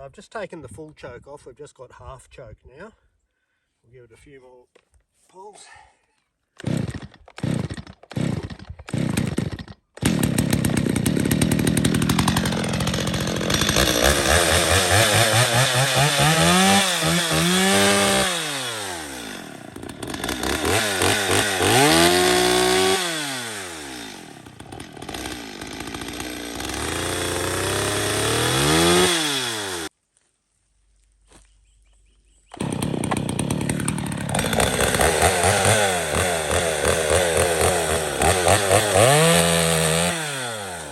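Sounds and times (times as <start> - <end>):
starter cord tugs: 6.6 - 29.8, 32.5 - 40.8
chainsaw engine revving: 6.6 - 29.9, 32.5 - 40.9.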